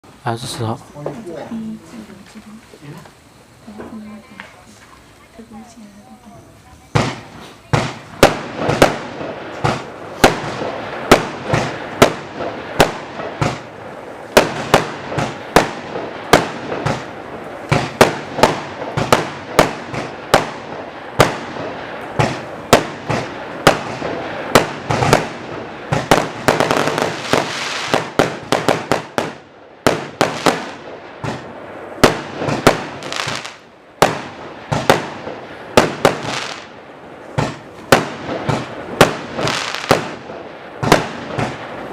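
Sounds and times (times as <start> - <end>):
burning firework hiss: 0.0 - 41.9
firework cake sharp reports: 3.6 - 36.7.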